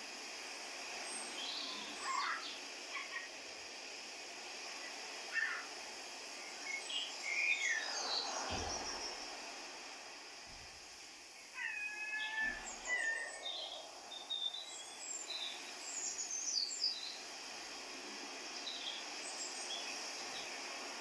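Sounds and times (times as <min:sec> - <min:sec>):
outdoor ambience hiss: 0:00.0 - 0:21.0
birds chirping: 0:01.1 - 0:03.4, 0:04.8 - 0:05.7, 0:11.6 - 0:17.2.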